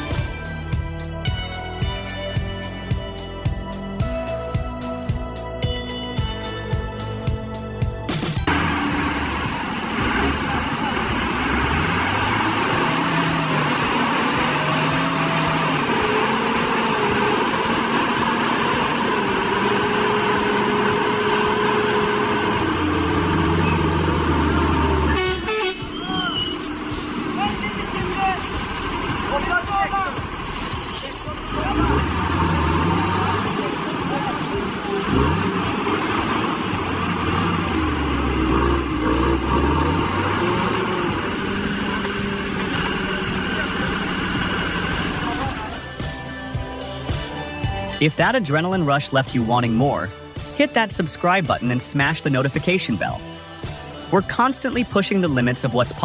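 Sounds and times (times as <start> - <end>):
heavy machine engine running: 8.4 - 46.3.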